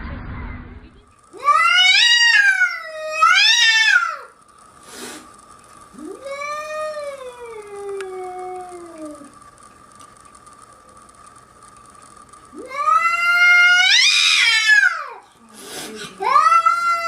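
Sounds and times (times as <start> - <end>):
cat yowling: 1.4 - 4.3, 12.6 - 15.1, 16.2 - 17.0.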